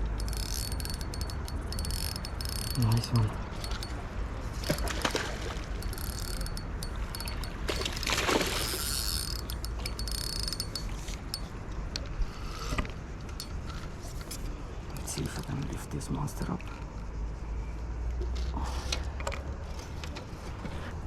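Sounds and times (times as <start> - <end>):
fishing reel clicking: 0.0 - 4.0, 4.6 - 7.6, 8.4 - 12.1, 13.4 - 13.6.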